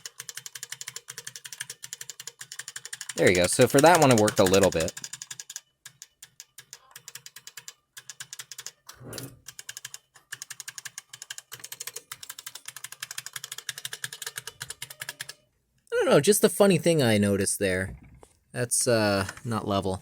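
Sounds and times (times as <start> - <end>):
keyboard keys clacking: 0.0 - 5.0.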